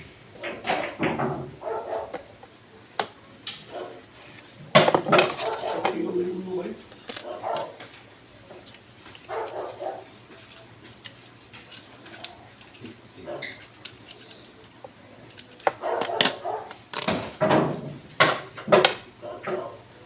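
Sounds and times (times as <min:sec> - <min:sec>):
dog barking: 0:01.6 - 0:02.3, 0:03.7 - 0:04.0, 0:05.3 - 0:06.0, 0:07.3 - 0:07.8, 0:09.3 - 0:10.1, 0:13.2 - 0:13.6, 0:15.8 - 0:16.8, 0:19.2 - 0:19.8.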